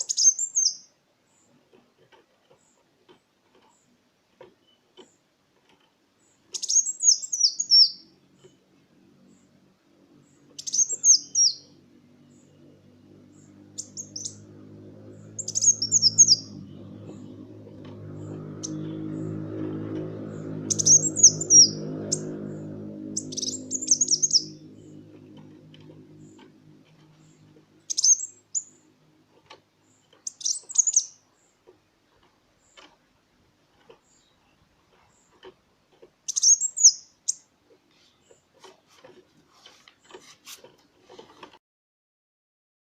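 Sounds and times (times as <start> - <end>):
bird twittering: 0.0 - 0.9, 6.5 - 8.1, 10.4 - 12.5, 13.3 - 14.5, 15.2 - 17.4, 20.6 - 22.4, 23.1 - 28.8, 29.9 - 31.5, 36.3 - 37.4
low hum: 9.3 - 29.3.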